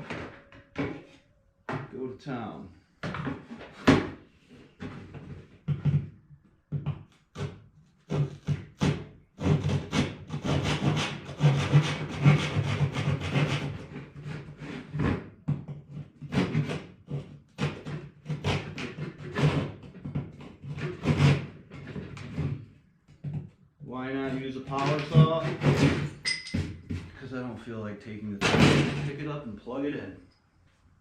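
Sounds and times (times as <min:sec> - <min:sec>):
hand saw cutting wood: 0:07.3 - 0:22.7, 0:24.2 - 0:26.2.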